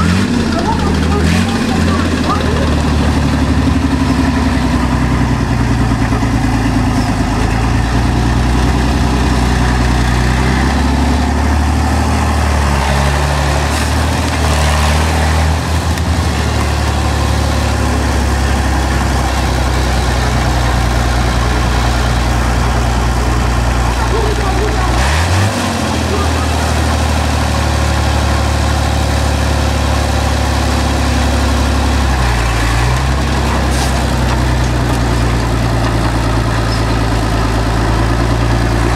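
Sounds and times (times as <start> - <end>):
large vehicle engine idling: 0.0 - 38.9.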